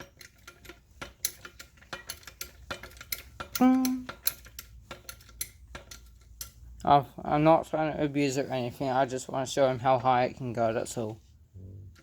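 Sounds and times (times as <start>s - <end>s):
trolley jack clicking: 0.0s - 6.6s.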